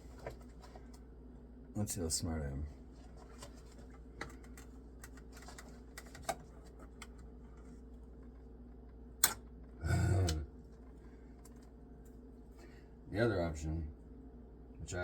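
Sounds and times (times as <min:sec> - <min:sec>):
low electrical hum: 0:00.0 - 0:15.0
sharp click: 0:09.2 - 0:09.4.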